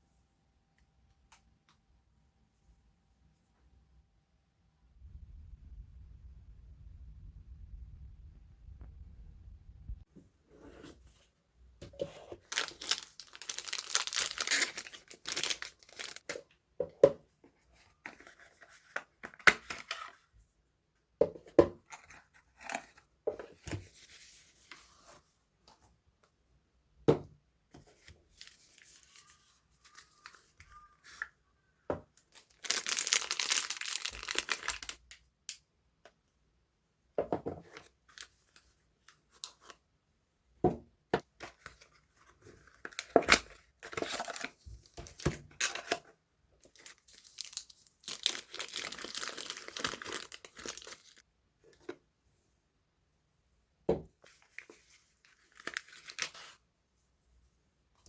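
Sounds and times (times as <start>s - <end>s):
packaging tearing and crinkling: 12.4s - 16.3s, 32.4s - 35.0s, 46.6s - 51.2s.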